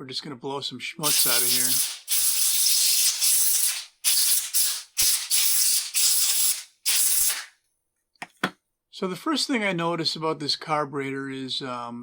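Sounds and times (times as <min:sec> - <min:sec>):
compressed air hissing blasts: 0:01.0 - 0:07.5.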